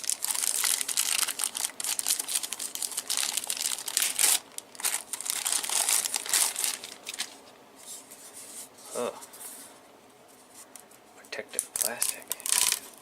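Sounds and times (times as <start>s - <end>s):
plastic packaging crinkling: 0.0s - 7.5s, 11.6s - 13.0s.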